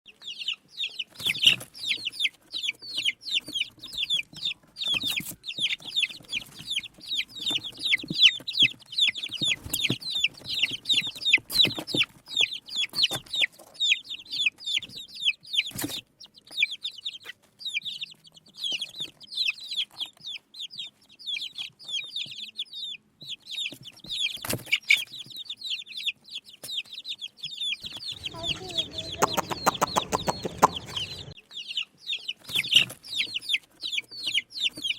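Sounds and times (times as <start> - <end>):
chicks peeping: 0.1 - 34.9
sharp taps: 28.2 - 31.3.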